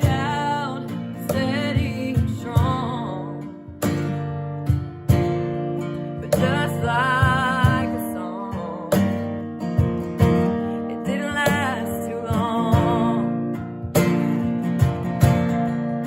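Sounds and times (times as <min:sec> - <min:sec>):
woman singing with vibrato: 0:00.0 - 0:03.7, 0:06.0 - 0:09.4, 0:10.5 - 0:13.6
strummed acoustic guitar: 0:00.0 - 0:16.0.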